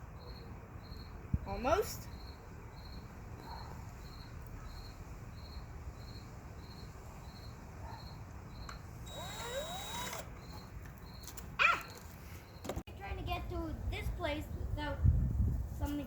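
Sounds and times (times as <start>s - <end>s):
cricket chirping: 0.0s - 1.2s, 2.0s - 11.4s.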